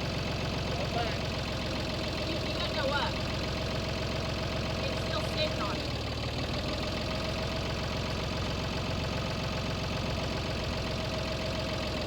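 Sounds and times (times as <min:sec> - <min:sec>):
tractor engine idling: 0:00.0 - 0:12.0.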